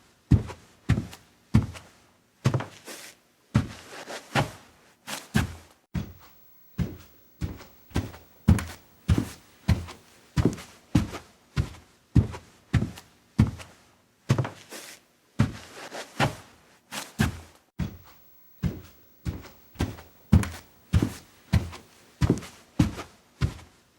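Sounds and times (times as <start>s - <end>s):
footsteps on a staircase: 6.0s - 10.6s, 17.8s - 23.0s.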